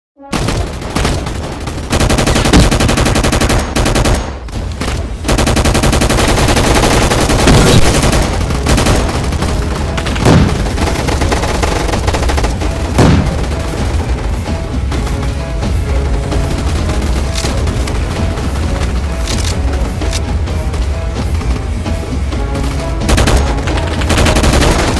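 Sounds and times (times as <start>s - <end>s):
dense rapid crackling: 0.3s - 22.3s, 23.0s - 24.9s.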